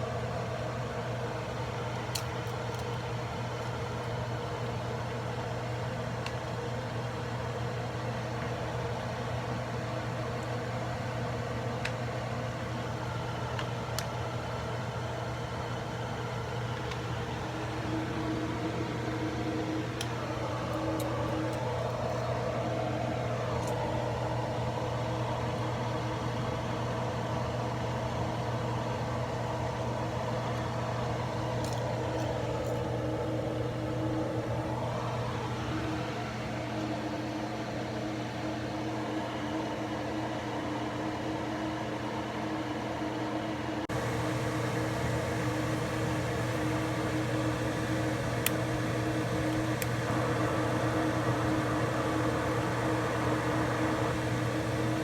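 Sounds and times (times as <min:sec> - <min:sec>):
bus engine drone: 0:43.9 - 0:55.0.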